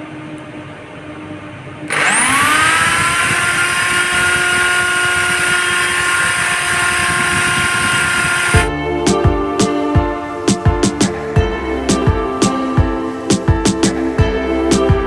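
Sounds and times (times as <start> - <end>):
electric drill whining: 1.9 - 8.7.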